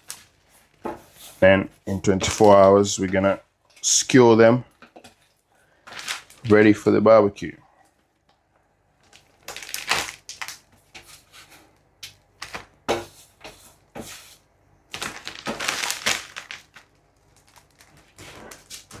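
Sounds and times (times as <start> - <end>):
plastic bag crinkling: 5.8 - 6.5, 9.0 - 10.7, 14.9 - 19.0.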